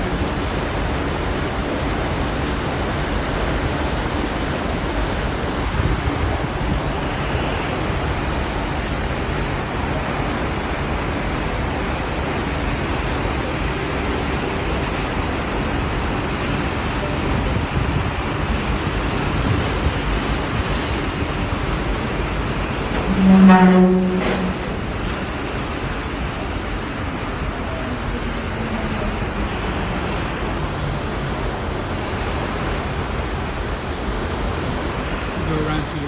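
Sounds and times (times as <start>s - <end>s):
rushing wind: 0.0s - 36.0s
water noise: 0.0s - 36.0s
wind buffeting microphone: 4.1s - 10.0s, 16.3s - 23.1s.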